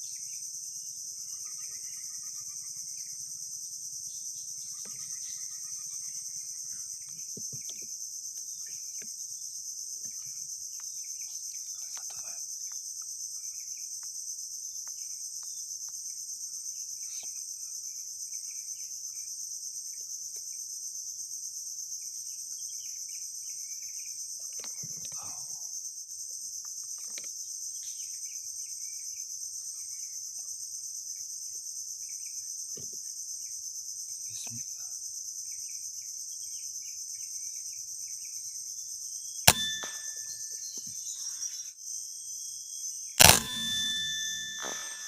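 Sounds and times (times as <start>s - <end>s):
crickets and insects chirping: 0.0s - 45.0s
air rifle shot: 39.5s - 40.2s, 43.2s - 45.0s.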